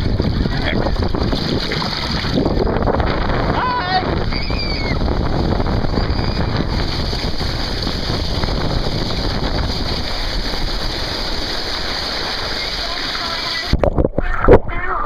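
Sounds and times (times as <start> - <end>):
wind buffeting microphone: 0.0 - 14.8
water rushing down a slide: 0.0 - 14.9.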